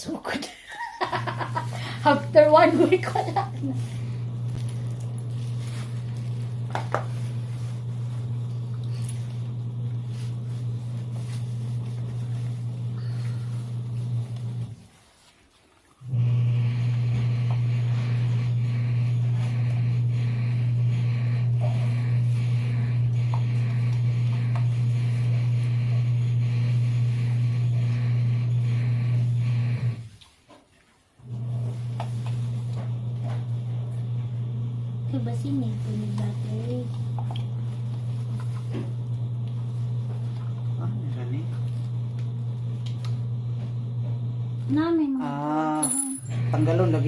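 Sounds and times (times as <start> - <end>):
steady low hum: 16.1 - 30.0.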